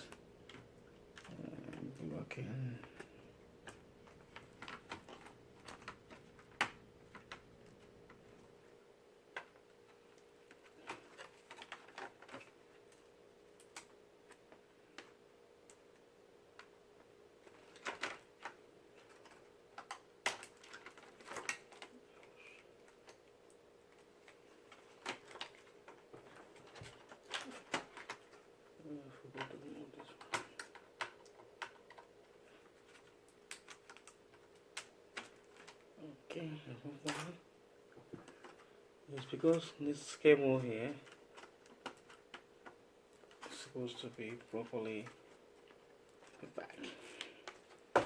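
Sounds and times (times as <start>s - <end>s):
faint steady hum: 0.0s - 48.0s
plastic laptop parts clicking: 17.5s - 22.0s, 32.8s - 35.8s, 41.0s - 43.5s.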